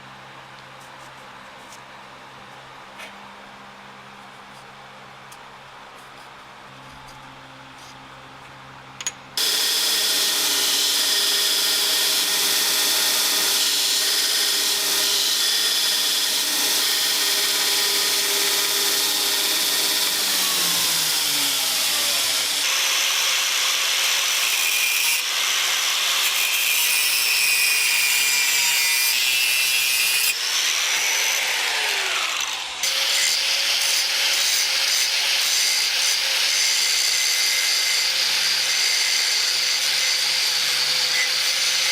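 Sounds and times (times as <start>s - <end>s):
electric power tool cutting steel: 9.4s - 41.9s.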